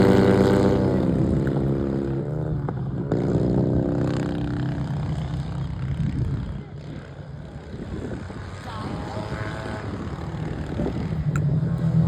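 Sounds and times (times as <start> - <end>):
small engine running at high revs: 3.2 - 12.0.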